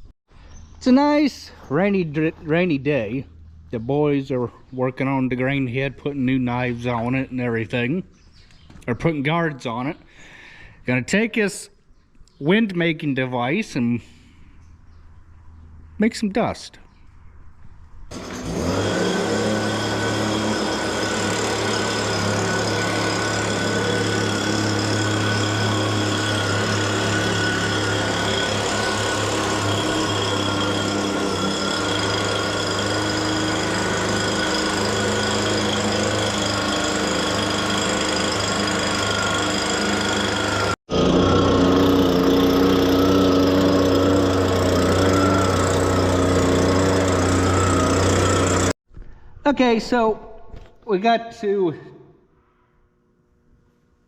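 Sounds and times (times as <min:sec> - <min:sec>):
leaf blower engine running: 0:18.1 - 0:48.8.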